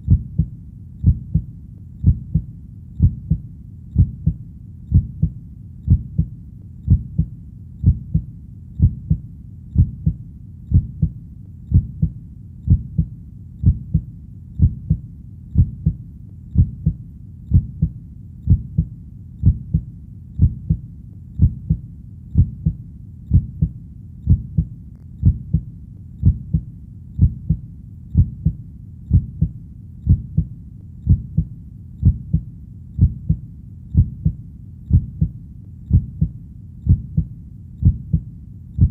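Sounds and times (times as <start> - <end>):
heartbeat double thump: 0.0 - 3.4, 4.0 - 6.3, 6.9 - 15.0, 15.6 - 16.0, 16.6 - 20.8, 21.4 - 21.8, 22.4 - 27.6, 28.2 - 30.5, 31.1 - 33.4, 34.0 - 35.3, 35.9 - 36.3, 36.9 - 38.2.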